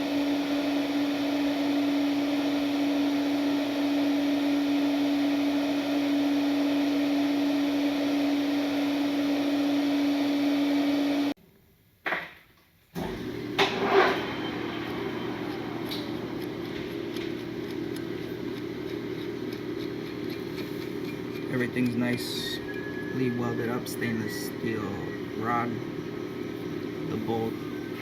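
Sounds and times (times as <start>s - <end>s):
machine hum: 0.0s - 11.4s, 13.0s - 28.0s
quieter hum: 12.9s - 28.0s.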